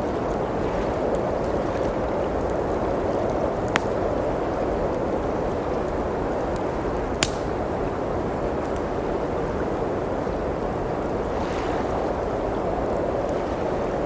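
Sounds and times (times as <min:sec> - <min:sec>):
wood fire crackling: 0:02.3 - 0:09.4
fire popping: 0:02.4 - 0:08.9.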